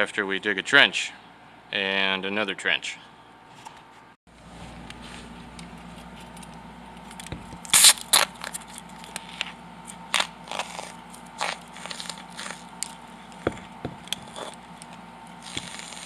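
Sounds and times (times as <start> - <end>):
steady low hum: 0.0 - 16.0
crackling and scraping handling: 3.5 - 16.0.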